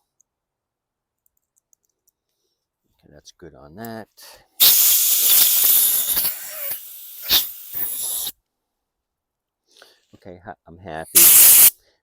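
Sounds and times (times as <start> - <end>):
pressurised spray hissing: 4.6 - 8.3, 11.2 - 11.7.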